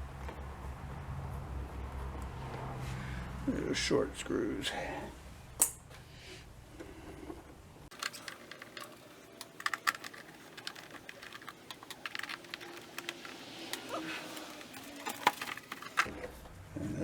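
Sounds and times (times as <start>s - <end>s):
screws and screwdriver clicking: 7.9s - 16.1s.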